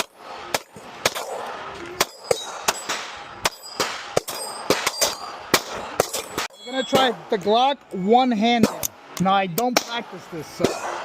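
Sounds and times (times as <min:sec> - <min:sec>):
pistol shots: 0:00.0 - 0:07.2
steel targets clanging: 0:00.0 - 0:11.0.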